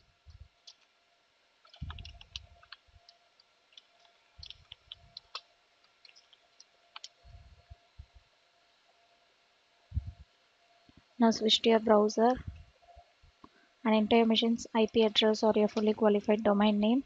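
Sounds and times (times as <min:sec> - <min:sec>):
computer keyboard typing clicks: 0:01.6 - 0:07.2
soft low thuds: 0:09.9 - 0:10.2.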